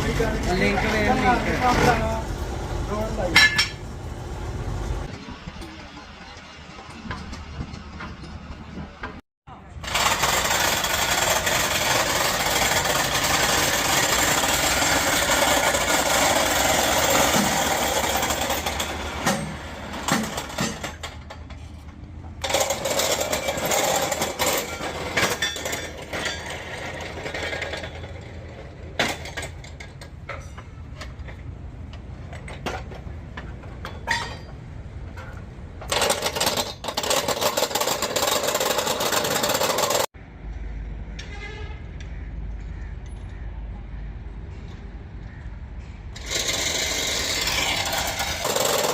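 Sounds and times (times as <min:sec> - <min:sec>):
power tool on steel: 0:09.8 - 0:21.0, 0:46.2 - 0:48.9.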